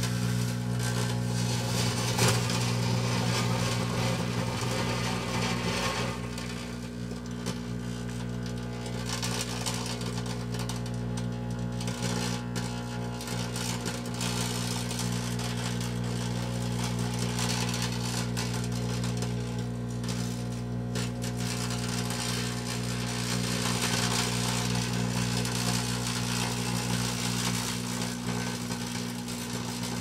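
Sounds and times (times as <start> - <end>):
firework crackling and hissing: 0.0 - 6.9
microwave oven humming: 0.0 - 30.0.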